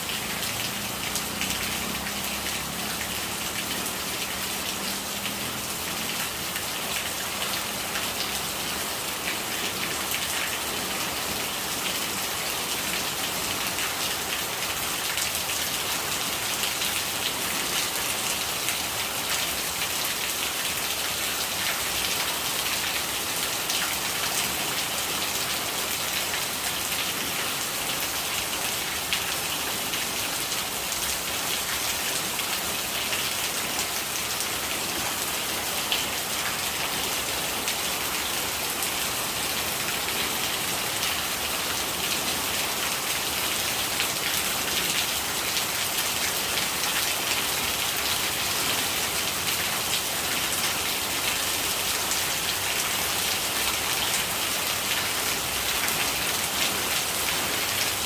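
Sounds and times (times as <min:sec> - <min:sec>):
rain pattering: 0:00.0 - 0:58.0.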